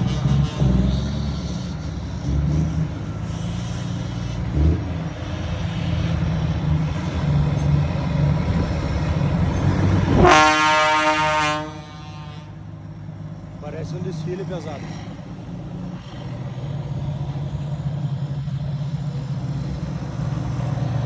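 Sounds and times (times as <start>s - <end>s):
truck air horn blast: 0.0s - 1.8s, 10.0s - 12.7s
truck diesel engines rumbling: 0.0s - 21.0s.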